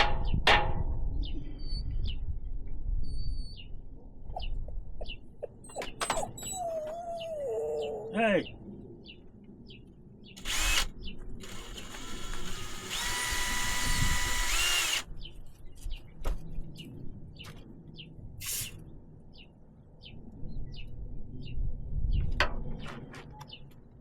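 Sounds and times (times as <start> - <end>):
power drill running: 10.4 - 15.1.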